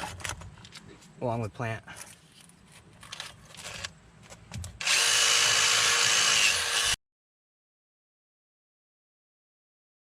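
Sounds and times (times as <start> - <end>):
power drill scouring rust: 4.8 - 7.0.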